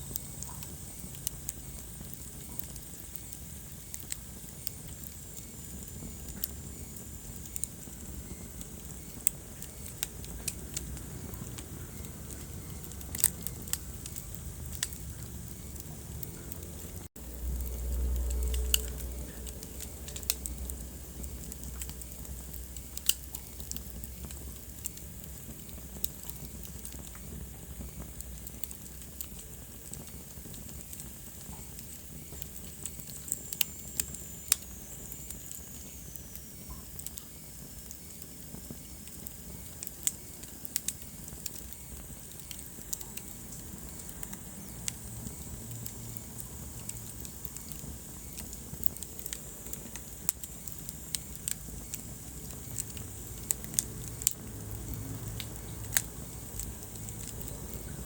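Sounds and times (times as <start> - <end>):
soft steady hiss: 0.0 - 58.0
wood fire crackling and popping: 0.0 - 58.0
low rumble: 10.2 - 23.0.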